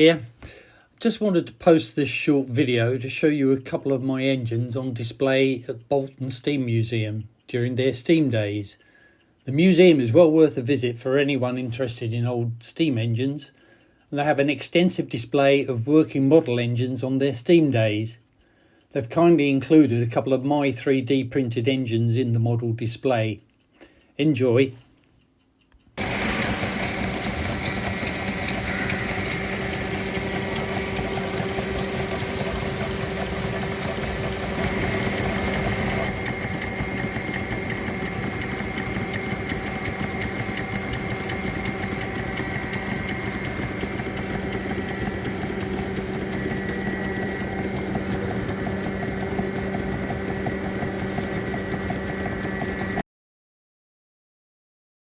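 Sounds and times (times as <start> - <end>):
model steam engines clattering: 26.0 - 53.0.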